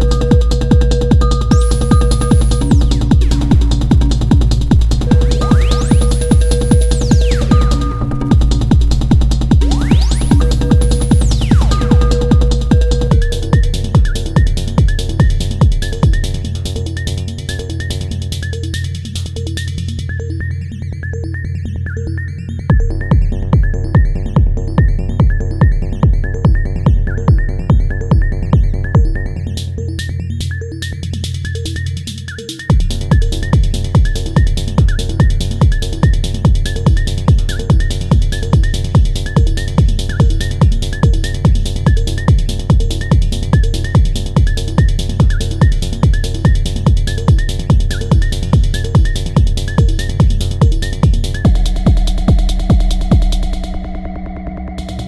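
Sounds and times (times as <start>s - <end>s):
high repeating synth sequence: 0.0s - 16.4s, 32.7s - 55.0s
kick drum beat: 0.0s - 17.8s, 22.7s - 29.6s, 32.7s - 55.0s
droning synth bass: 0.0s - 31.8s, 32.7s - 55.0s
short high synth blips: 5.1s - 8.6s.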